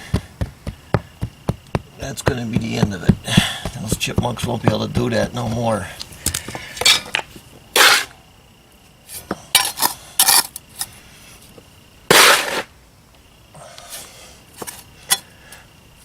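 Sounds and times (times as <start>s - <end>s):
tool scraping: 7.8s - 8.1s.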